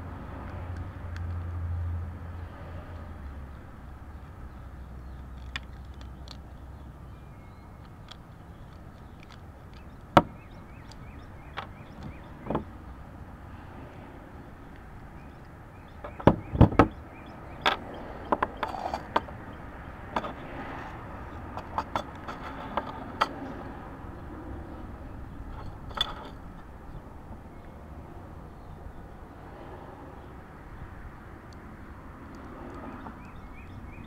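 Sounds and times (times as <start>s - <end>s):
padlock metal clicks and taps: 7.8s - 12.7s.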